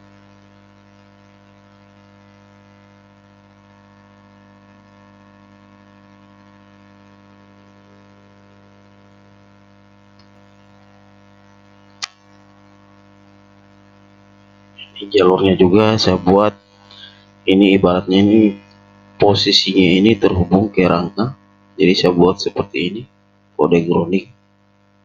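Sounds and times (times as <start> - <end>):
electrical mains hum: 0.0 - 25.0
sharp click: 12.0 - 12.3.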